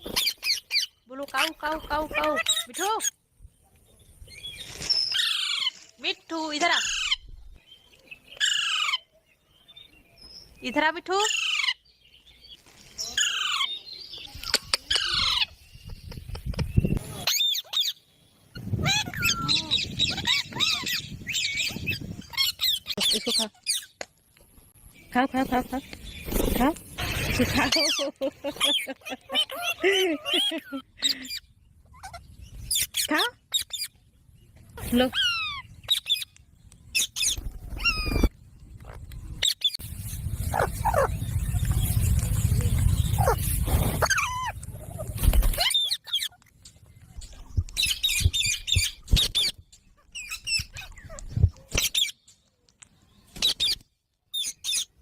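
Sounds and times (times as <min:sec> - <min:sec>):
low rumble: 0:38.3 - 0:45.3
parrot squawking: 0:44.0 - 0:45.0.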